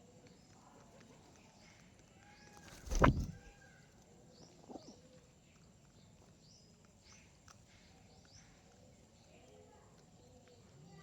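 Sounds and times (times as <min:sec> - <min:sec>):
loud thump: 0:02.8 - 0:03.5.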